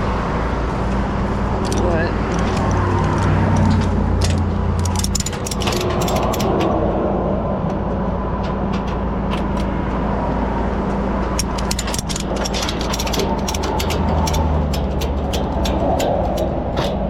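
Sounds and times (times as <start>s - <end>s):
truck engine running: 0.0s - 17.0s
ratchet strap clicks: 1.6s - 6.7s, 11.3s - 17.0s.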